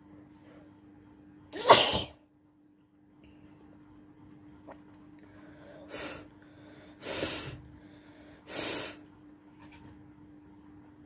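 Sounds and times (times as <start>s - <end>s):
forceful breaths through nose: 5.6s - 9.0s.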